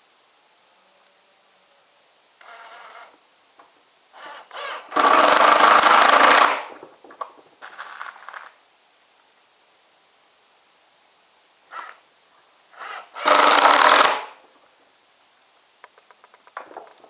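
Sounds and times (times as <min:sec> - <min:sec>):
impact driver driving screws: 0:12.8 - 0:14.4.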